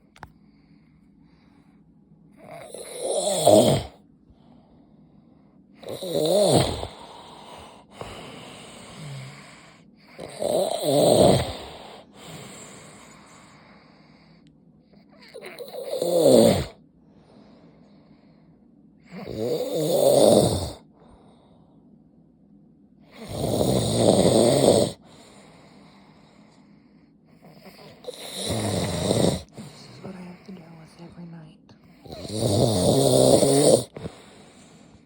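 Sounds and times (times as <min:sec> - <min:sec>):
quiet breaths: 0:00.0 - 0:35.0
man snoring loudly: 0:02.4 - 0:04.0, 0:05.8 - 0:13.0, 0:15.3 - 0:16.8, 0:19.1 - 0:20.9, 0:23.1 - 0:25.4, 0:27.4 - 0:29.8, 0:32.0 - 0:35.0.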